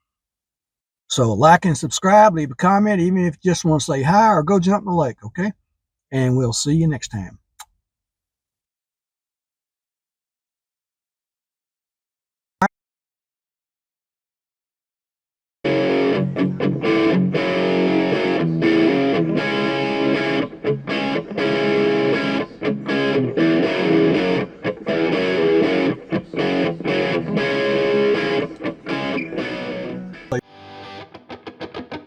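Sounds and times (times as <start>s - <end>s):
distorted electric guitar music: 15.7s - 32.0s.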